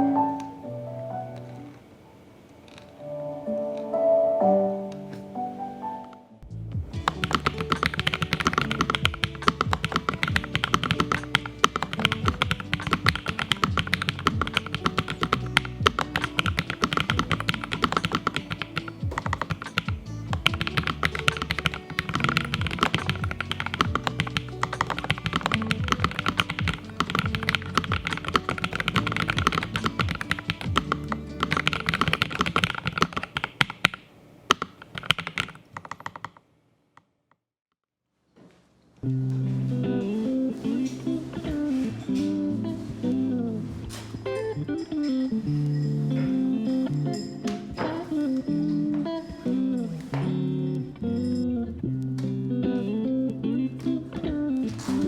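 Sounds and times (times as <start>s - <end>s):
background music: 0.0s - 33.4s, 39.0s - 55.0s
fast typing on mechanical keyboard: 7.0s - 36.4s.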